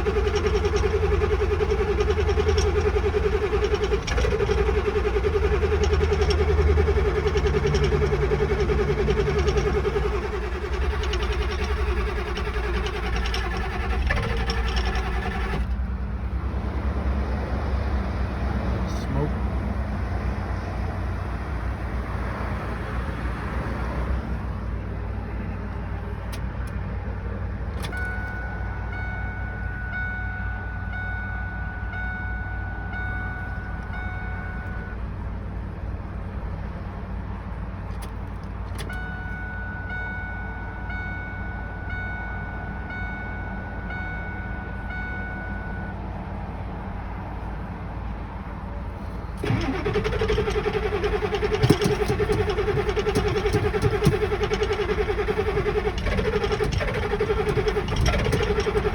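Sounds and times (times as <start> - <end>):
low steady rumble: 0.0 - 21.8
truck warning chime dinging: 27.8 - 35.4, 38.7 - 46.2, 49.4 - 58.9.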